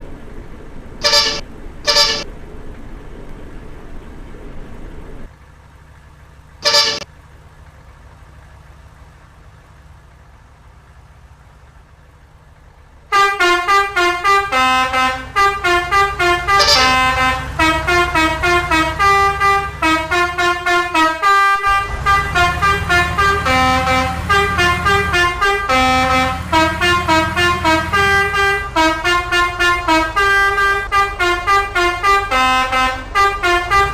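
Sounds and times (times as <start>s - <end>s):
bus horn honks: 1.0s - 2.3s, 6.6s - 7.1s, 13.1s - 33.9s
musical bus horn tune: 1.0s - 2.3s, 6.6s - 7.1s, 13.1s - 33.9s.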